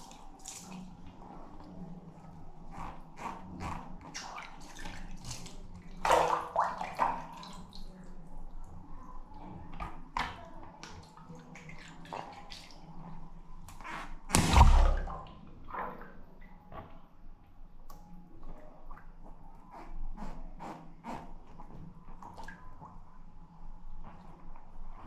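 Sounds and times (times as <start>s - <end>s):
water splashes: 14.3s - 15.3s.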